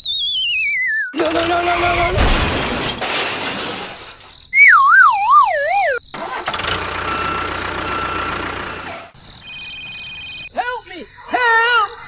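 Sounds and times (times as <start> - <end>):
wobbling whistle sliding down: 0.0 - 1.2, 4.5 - 6.0.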